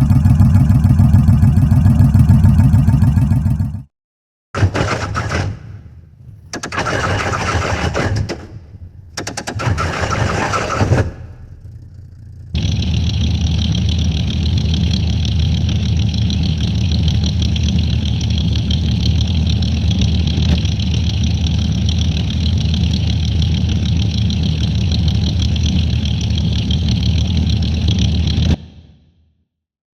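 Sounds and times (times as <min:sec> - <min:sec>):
car engine running: 0:00.0 - 0:03.9, 0:06.6 - 0:28.6
car starter cranking: 0:04.6 - 0:15.4.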